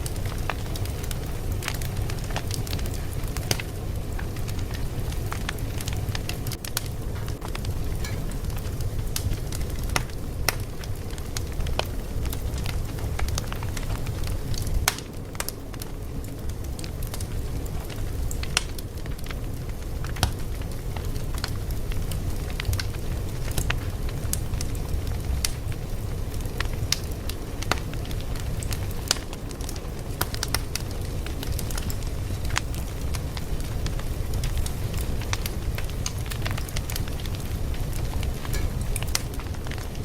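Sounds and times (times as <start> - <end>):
fire crackling: 0.0 - 40.0.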